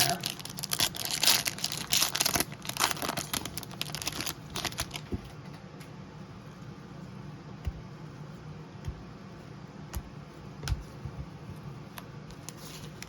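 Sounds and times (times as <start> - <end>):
wrappers crinkling and tearing: 0.0 - 5.0
faint handling sounds: 10.0 - 13.0.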